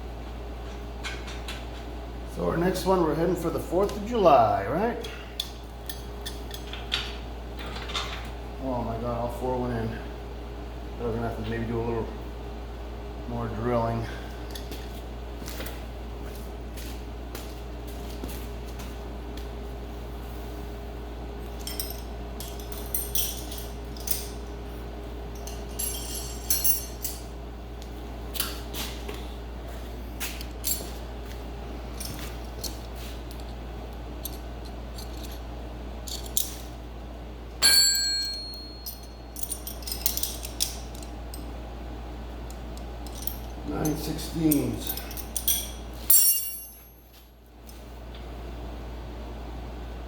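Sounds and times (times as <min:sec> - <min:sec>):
steady low hum: 0:00.0 - 0:50.0
metal tools clinking: 0:05.0 - 0:08.2, 0:21.6 - 0:24.6, 0:25.3 - 0:27.3, 0:34.2 - 0:36.7, 0:37.6 - 0:41.5, 0:43.0 - 0:47.2
metal tool clanking down: 0:25.4 - 0:27.2, 0:37.6 - 0:41.1, 0:43.0 - 0:47.0.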